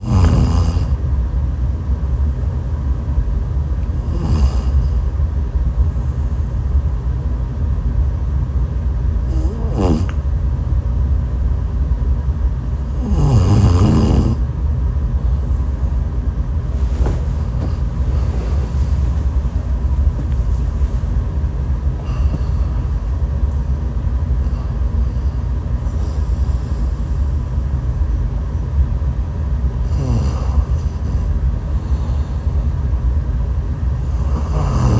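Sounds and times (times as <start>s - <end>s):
woman snoring: 0.0s - 1.0s, 4.0s - 5.0s, 9.3s - 10.2s, 12.9s - 14.4s, 29.8s - 31.2s, 34.1s - 34.9s
steady low rumble: 0.0s - 34.9s.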